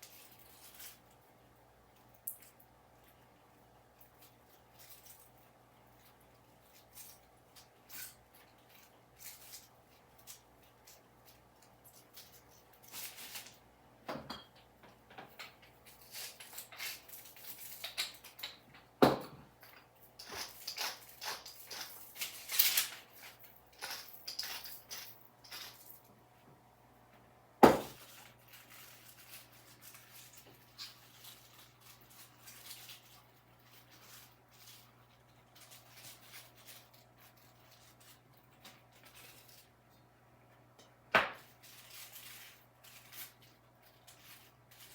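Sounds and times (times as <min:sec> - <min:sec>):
food rubbing and rustling: 0:03.9 - 0:13.8, 0:15.4 - 0:18.7, 0:19.7 - 0:26.1, 0:27.8 - 0:40.1, 0:41.4 - 0:44.9
sharp knocks on worktop: 0:19.0 - 0:19.4, 0:27.6 - 0:28.0, 0:41.1 - 0:41.4.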